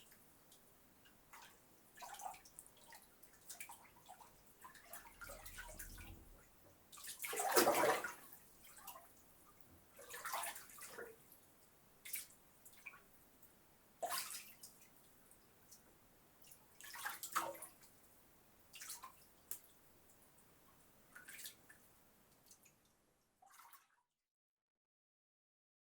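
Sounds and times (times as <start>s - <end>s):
water splashing in bathtub: 1.3s - 9.2s, 10.0s - 11.3s, 14.0s - 14.9s, 16.4s - 17.9s, 18.7s - 19.7s, 21.1s - 24.0s.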